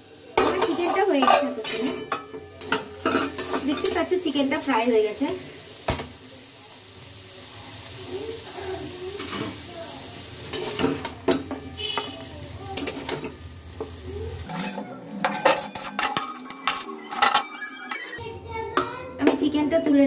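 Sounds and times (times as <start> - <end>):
chicken sizzling in oil: 0.0 - 16.2
utensil scraping a pan: 0.4 - 4.1, 14.4 - 18.2.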